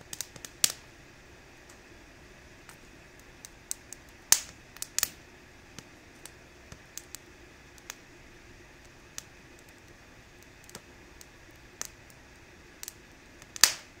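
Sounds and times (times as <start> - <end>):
faint steady hiss: 0.0 - 14.0
wood fire crackling and popping: 0.0 - 14.0.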